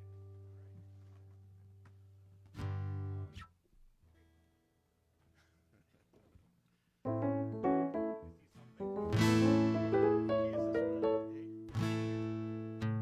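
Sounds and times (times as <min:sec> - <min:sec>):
keyboard and guitar noodling: 0:07.1 - 0:12.4.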